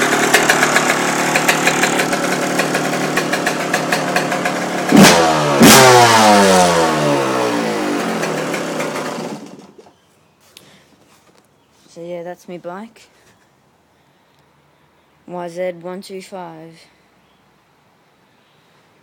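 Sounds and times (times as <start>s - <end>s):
two-stroke engine idling and revving: 0.0s - 9.9s.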